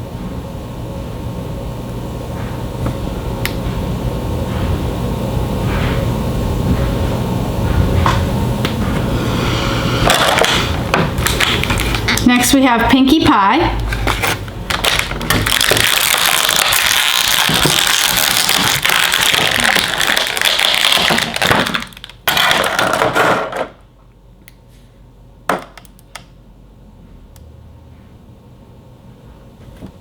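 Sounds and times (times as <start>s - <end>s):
packaging crinkling: 10.4s - 12.2s, 13.9s - 23.0s.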